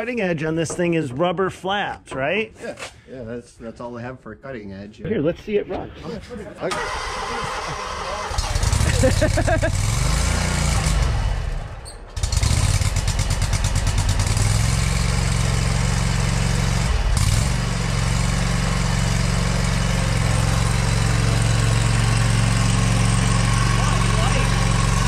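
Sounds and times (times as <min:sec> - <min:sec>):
lawn mower engine running: 0:06.7 - 0:25.0.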